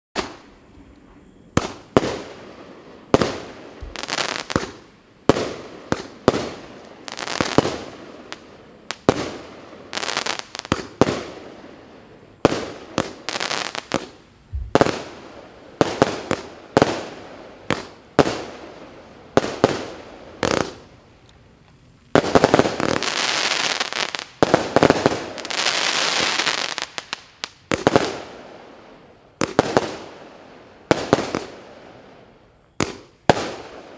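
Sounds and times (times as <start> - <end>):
firework crackling: 0.2 - 21.2, 21.8 - 33.9
firework bangs: 1.5 - 20.9, 22.1 - 28.5.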